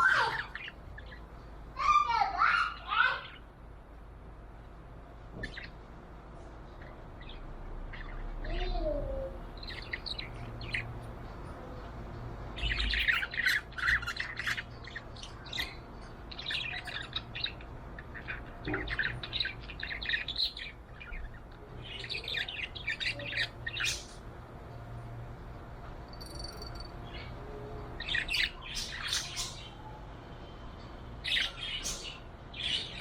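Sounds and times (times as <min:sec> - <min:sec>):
budgerigar chirping and warbling: 0:00.0 - 0:01.2, 0:06.8 - 0:10.9, 0:12.6 - 0:24.2, 0:28.0 - 0:29.9
low steady hum: 0:00.0 - 0:33.0.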